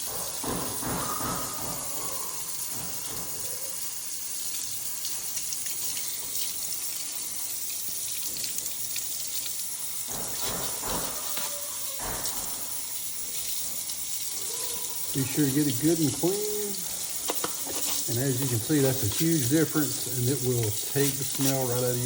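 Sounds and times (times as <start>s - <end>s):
tap water running and splashing: 0.0s - 22.0s
scrubbing in a sink: 4.9s - 22.0s.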